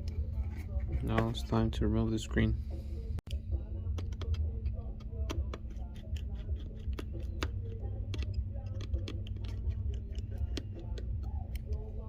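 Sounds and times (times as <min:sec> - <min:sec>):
steady low hum: 0:00.0 - 0:12.0
hand tools clicking and tapping: 0:03.9 - 0:11.8.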